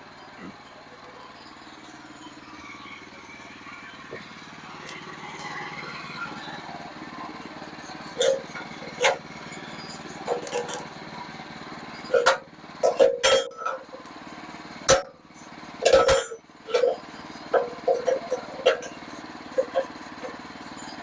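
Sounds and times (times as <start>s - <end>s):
sawmill engine running: 0.0s - 21.0s
sharp metallic clanks and knocks: 7.2s - 21.0s.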